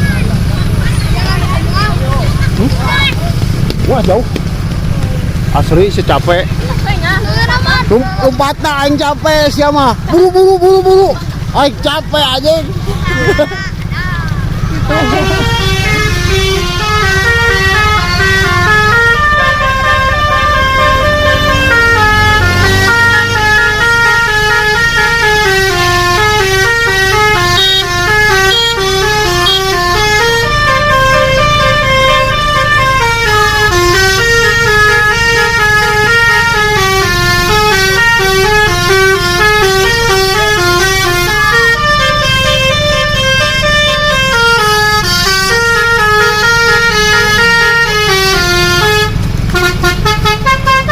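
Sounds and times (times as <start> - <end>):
bus engine running: 0.0 - 50.9
multi-tone bus horn melody: 14.4 - 50.9.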